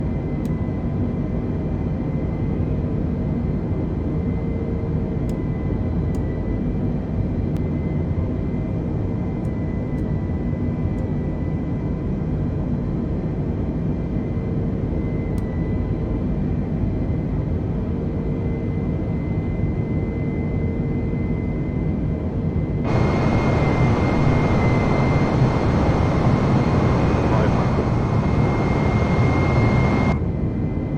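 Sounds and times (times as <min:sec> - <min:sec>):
jet engine and airflow noise: 0:00.0 - 0:30.9
thin high whine: 0:22.8 - 0:30.2.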